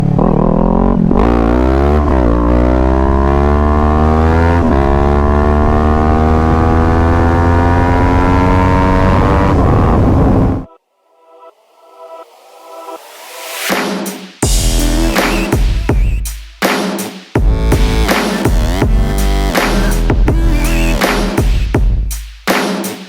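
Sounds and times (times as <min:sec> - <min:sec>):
motorcycle engine accelerating: 0:00.0 - 0:10.7.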